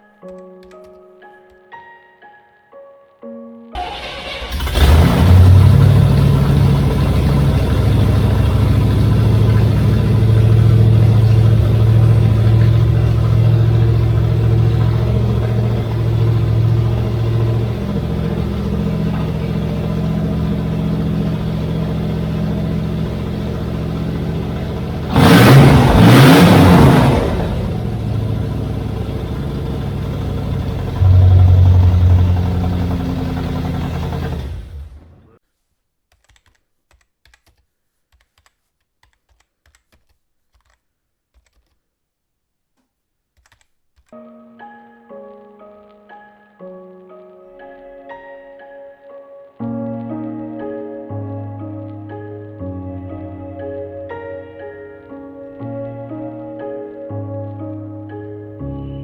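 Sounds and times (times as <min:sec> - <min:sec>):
car engine revving at idle: 0:04.5 - 0:35.3.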